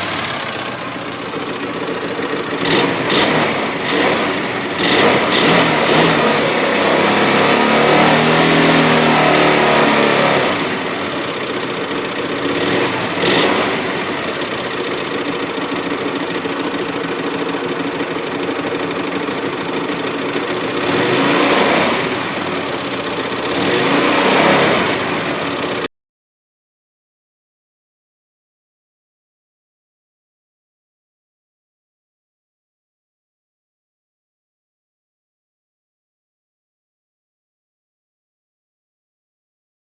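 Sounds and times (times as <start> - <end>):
engine clicking and clattering: 0.0 - 25.9
motorcycle engine revving: 0.0 - 25.9.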